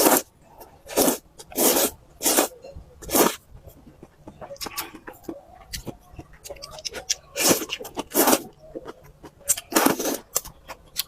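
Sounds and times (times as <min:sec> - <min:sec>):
loud noodle slurps: 0:00.9 - 0:03.4
wet chewing and mouth smacks: 0:03.8 - 0:11.0.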